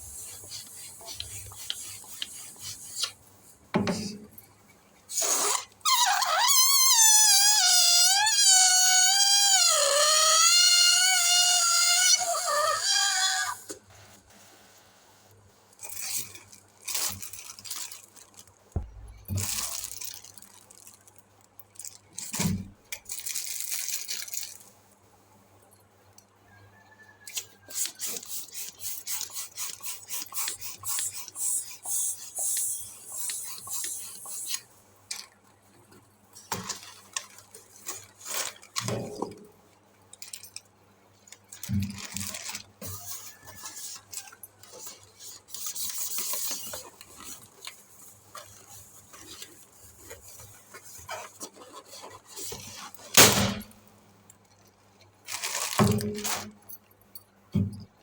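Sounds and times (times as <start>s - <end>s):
balloon packaging rustling: 15.7s - 24.8s, 29.2s - 39.4s, 41.4s - 56.8s
dull thumps: 18.8s - 19.9s.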